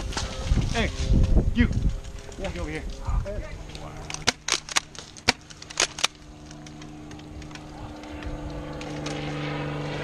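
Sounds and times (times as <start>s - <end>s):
engine hum: 0.0s - 10.0s.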